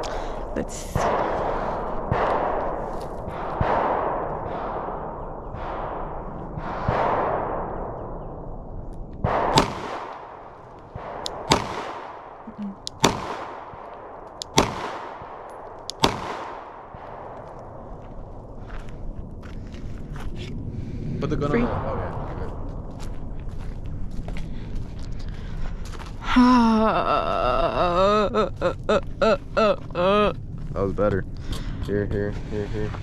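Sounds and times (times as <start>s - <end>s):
pistol shots echoing: 1.0s - 7.8s, 9.2s - 17.7s.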